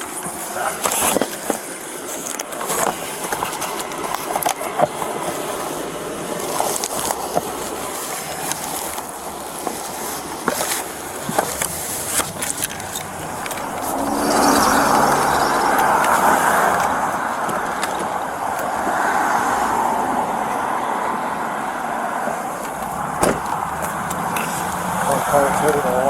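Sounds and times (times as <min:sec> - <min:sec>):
rustling against microphone: 0:00.2 - 0:19.0, 0:22.4 - 0:26.0
handling clicks and knocks: 0:02.2 - 0:14.0, 0:15.8 - 0:18.9, 0:22.5 - 0:26.0.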